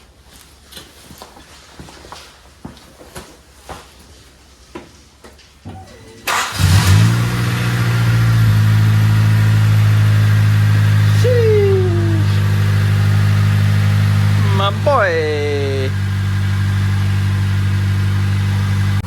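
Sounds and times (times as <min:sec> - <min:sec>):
car engine starting and idling: 0:06.2 - 0:19.0
short falling whine: 0:08.0 - 0:19.0.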